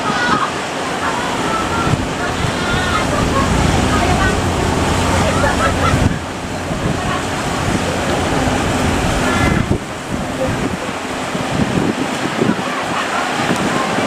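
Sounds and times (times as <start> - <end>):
ocean waves breaking: 0.0 - 14.0
wind buffeting microphone: 0.0 - 14.0.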